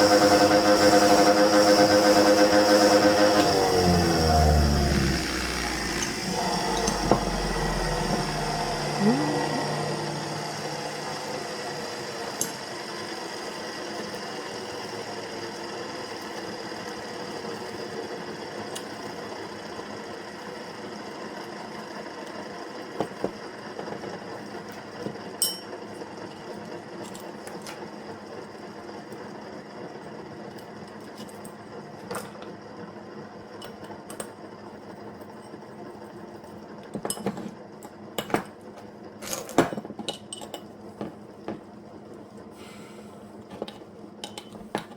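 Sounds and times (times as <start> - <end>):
small motor humming: 0.0 - 12.4.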